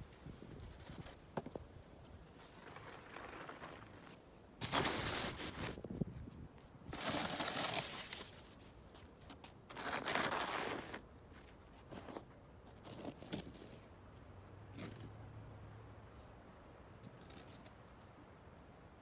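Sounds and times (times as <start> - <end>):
snow shovel scraping snow: 2.4 - 5.8, 6.9 - 8.4, 9.7 - 11.0.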